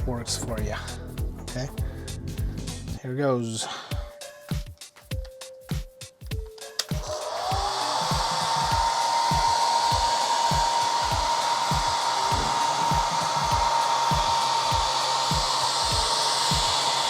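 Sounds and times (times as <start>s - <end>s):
low regular beat: 0.0s - 3.0s, 3.9s - 17.0s
hair dryer running: 6.8s - 17.0s.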